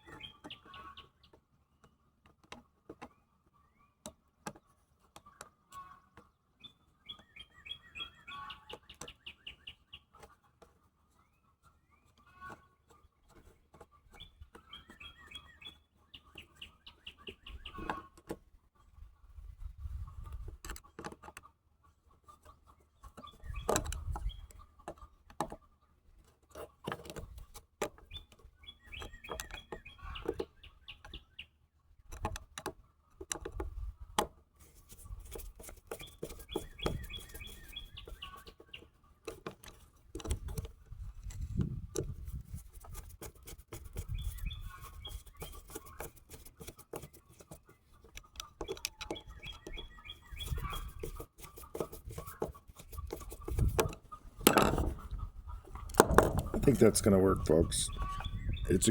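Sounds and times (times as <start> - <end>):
birds chirping: 0.0 - 1.4, 5.2 - 10.3, 11.1 - 18.2, 22.3 - 25.9, 27.9 - 31.6, 34.9 - 58.9
clicks and taps of small tools: 46.0 - 49.8.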